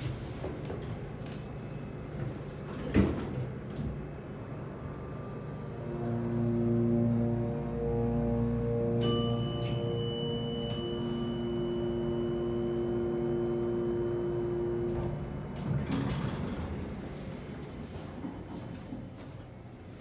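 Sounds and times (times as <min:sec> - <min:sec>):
steady low hum: 0:04.6 - 0:15.6
elevator chime ding: 0:08.9 - 0:14.9.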